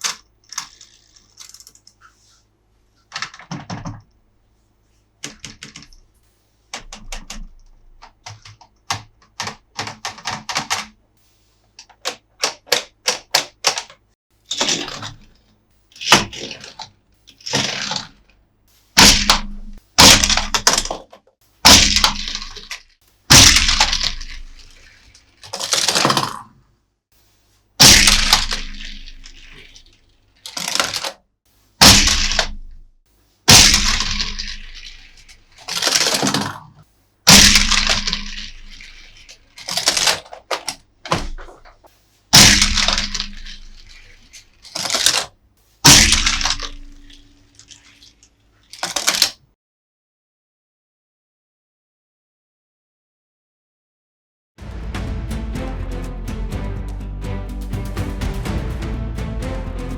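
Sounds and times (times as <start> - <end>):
plastic toy cracks and snaps: 0.0 - 1.9, 11.8 - 15.2, 19.0 - 26.5, 27.8 - 31.2, 31.8 - 32.9, 33.5 - 36.7, 37.3 - 48.1, 48.7 - 49.4
small plastic clicks: 0.0 - 2.2, 11.8 - 18.4, 19.0 - 26.5, 27.8 - 31.2, 33.5 - 49.4.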